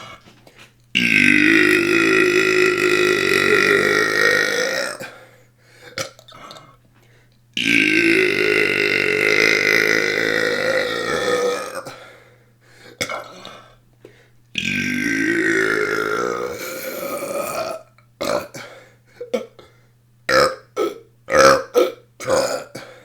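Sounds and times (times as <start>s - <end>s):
person burping: 1.0s - 5.2s, 5.9s - 6.8s, 7.6s - 12.0s, 14.6s - 19.7s, 20.3s - 22.9s.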